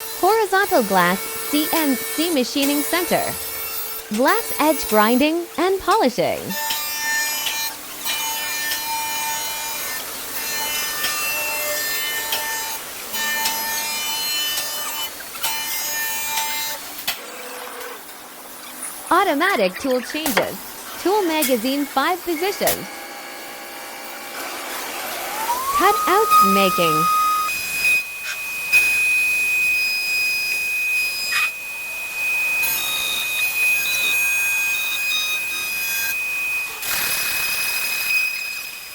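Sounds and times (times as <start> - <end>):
spindle high tone: 0.4 - 3.4, 19.1 - 22.9, 25.1 - 27.5
high-pitched machine whine: 6.5 - 38.9.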